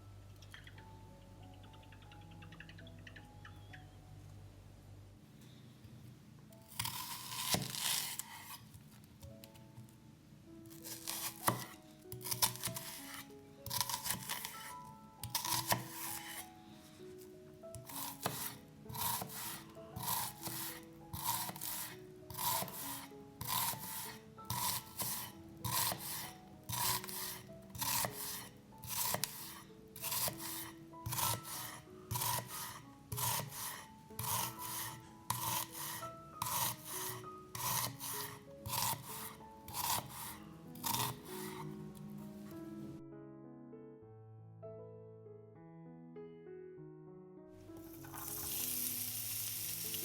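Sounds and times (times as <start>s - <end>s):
soft background music: 0.0s - 50.0s
food grated on metal grater: 6.8s - 8.6s, 10.8s - 14.7s, 15.3s - 16.5s, 17.8s - 41.7s.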